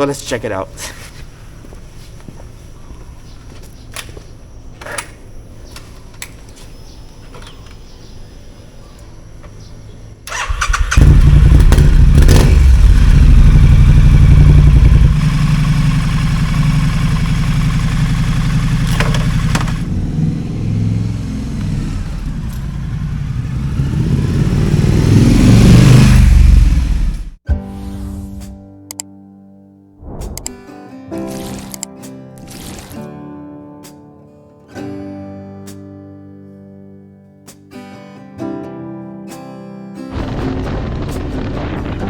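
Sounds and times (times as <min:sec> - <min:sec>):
motorcycle engine starting and idling: 0:10.2 - 0:27.4.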